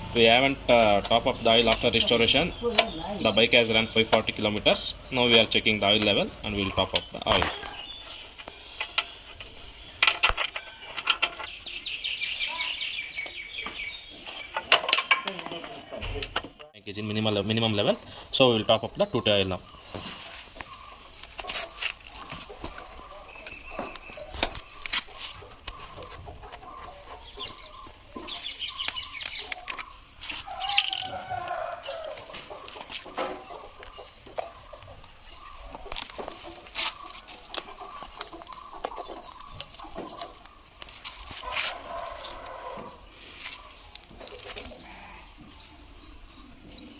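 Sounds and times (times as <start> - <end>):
small birds chirping: 0.0 - 46.9
sharp clicks and knocks: 8.4 - 11.7
chickens clucking: 17.5 - 46.9.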